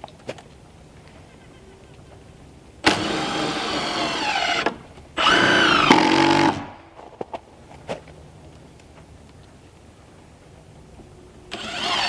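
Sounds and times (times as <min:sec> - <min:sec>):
power drill running: 0:02.8 - 0:06.9, 0:11.5 - 0:12.0.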